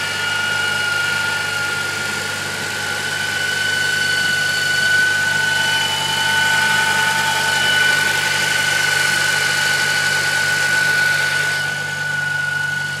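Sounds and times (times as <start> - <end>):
car engine idling: 0.0 - 13.0
steady high whine: 0.0 - 13.0.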